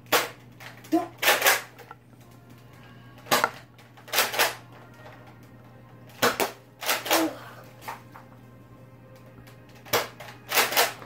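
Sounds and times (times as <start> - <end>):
toy blaster plastic clacks and pops: 0.1 - 2.0, 9.8 - 11.0.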